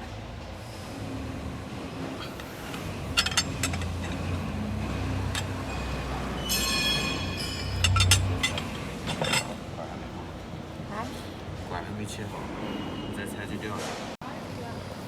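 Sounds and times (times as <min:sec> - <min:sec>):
sharp metal clanks: 0:02.2 - 0:09.6
high metallic squeal: 0:03.0 - 0:09.5.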